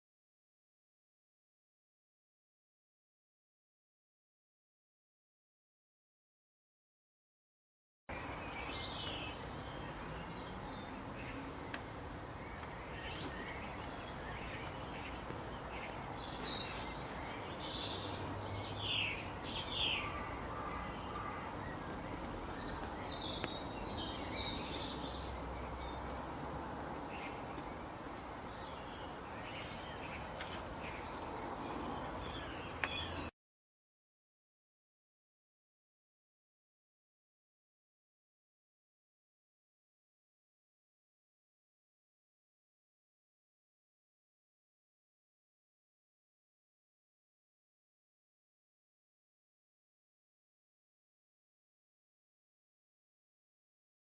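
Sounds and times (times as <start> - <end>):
birds chirping: 8.1 - 33.3.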